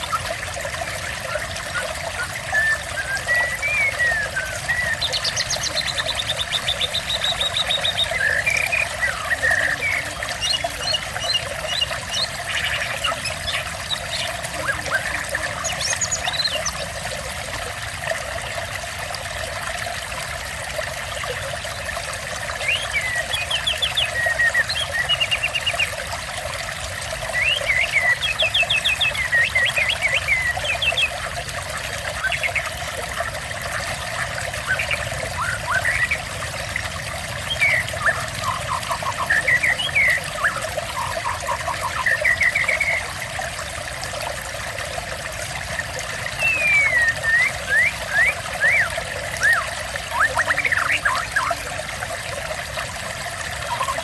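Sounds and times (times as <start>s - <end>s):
water trickling and splashing: 0.0s - 54.0s
songbird singing: 1.3s - 16.9s, 22.5s - 25.9s, 27.3s - 31.4s, 33.8s - 36.5s, 37.2s - 43.1s, 46.3s - 51.7s.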